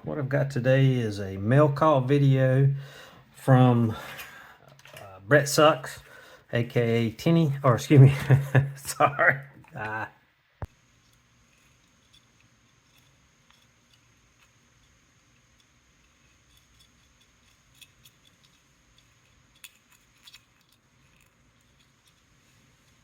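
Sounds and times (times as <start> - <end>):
small hard objects clicking: 11.0 - 23.0.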